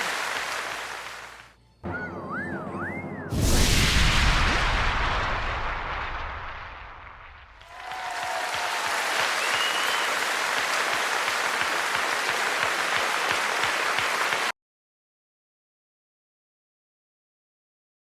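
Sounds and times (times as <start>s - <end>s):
audience applauding: 0.0s - 1.6s, 7.6s - 14.5s.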